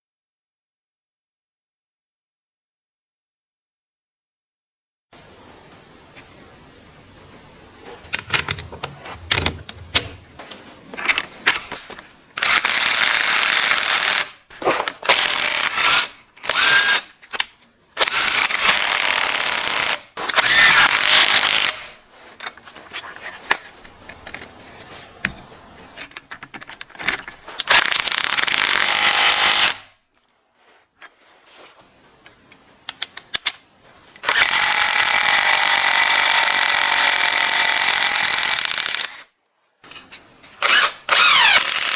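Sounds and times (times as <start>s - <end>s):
tool handling clicks and knocks: 8.0s - 12.5s, 25.2s - 27.8s.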